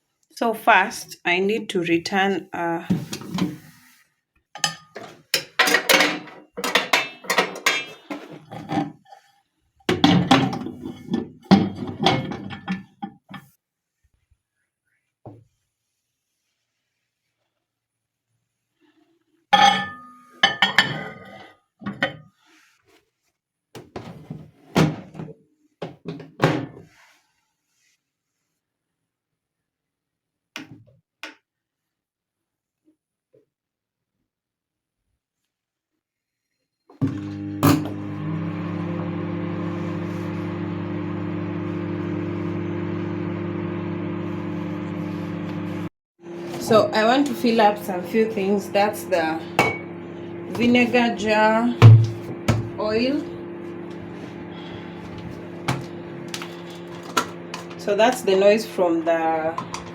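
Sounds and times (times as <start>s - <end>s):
kitchen containers knocking and clinking: 4.6s - 9.0s, 9.9s - 13.5s, 19.6s - 21.3s, 49.0s - 51.0s, 51.8s - 53.2s, 55.0s - 58.2s, 59.4s - 59.9s
microwave oven humming: 37.0s - 59.9s.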